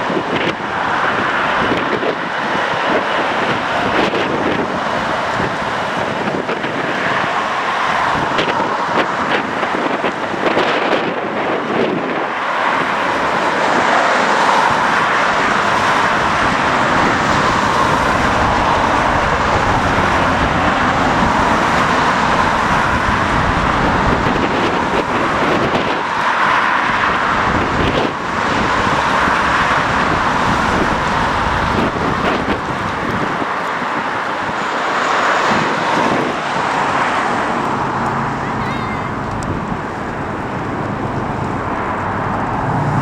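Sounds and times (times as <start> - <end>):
steady rushing roar: 0.0 - 43.0
wind buffeting microphone: 0.0 - 43.0.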